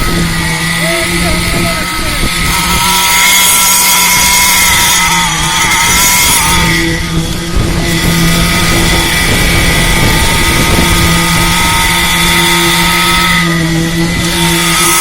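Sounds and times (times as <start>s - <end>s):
high machine whine: 0.0s - 15.0s
machinery engine droning: 0.0s - 15.0s.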